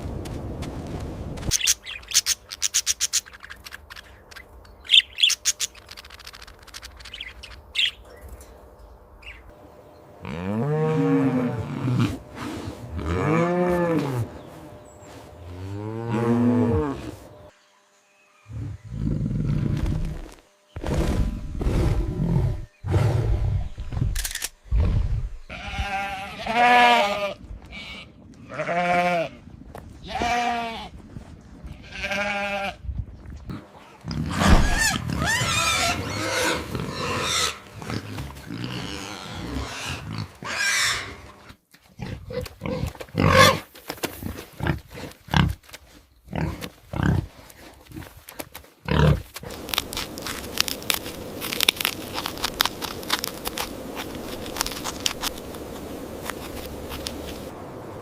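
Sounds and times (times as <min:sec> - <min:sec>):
farm animals calling: 0:33.8 - 0:43.6.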